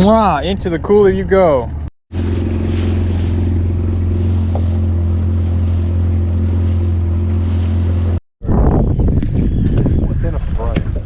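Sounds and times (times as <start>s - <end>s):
boat motor running: 0.0s - 8.2s
wind and water noise: 0.0s - 11.0s.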